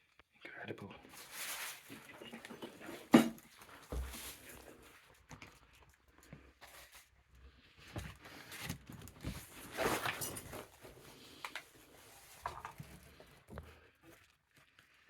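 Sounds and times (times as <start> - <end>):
scraping rustle: 8.4 - 11.0.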